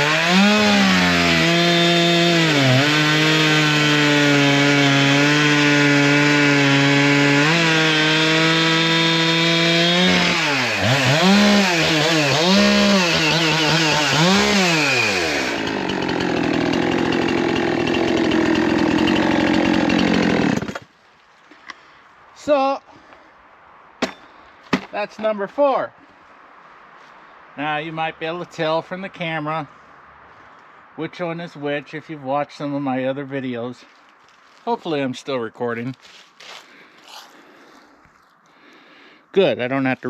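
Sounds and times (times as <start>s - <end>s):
chainsaw revving: 0.0s - 20.8s.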